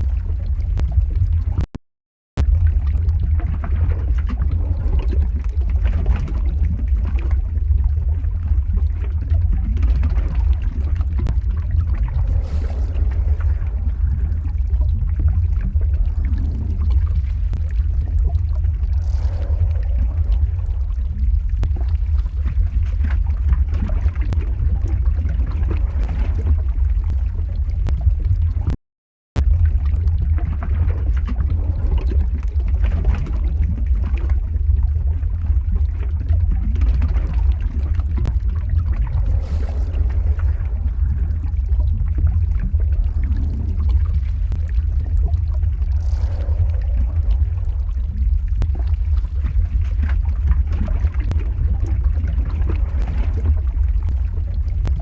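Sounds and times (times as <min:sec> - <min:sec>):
lava flow low rumble: 0:00.0 - 0:01.7, 0:02.4 - 0:28.8, 0:29.4 - 0:55.0
scattered crackles: 0:00.0 - 0:01.8, 0:02.4 - 0:28.8, 0:29.4 - 0:55.0.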